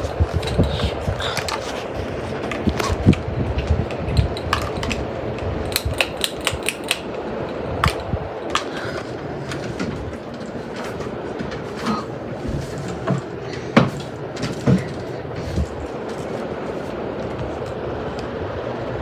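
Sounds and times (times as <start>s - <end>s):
ceiling fan air rushing: 0.0s - 19.0s
sharp clicks and taps: 5.7s - 7.2s.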